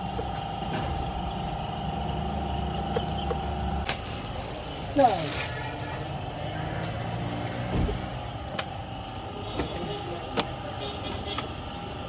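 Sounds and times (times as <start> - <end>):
car engine running: 0.0 - 11.4.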